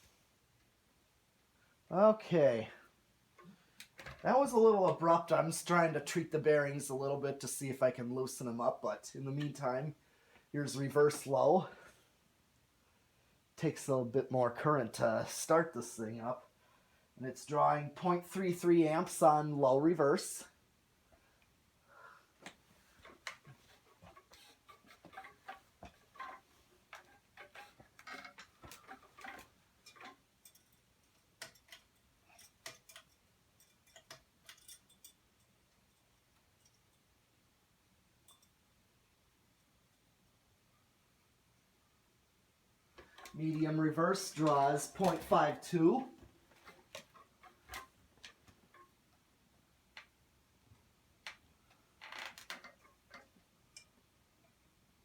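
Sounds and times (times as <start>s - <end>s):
faint ticks and clicks: 22.4s - 37.1s.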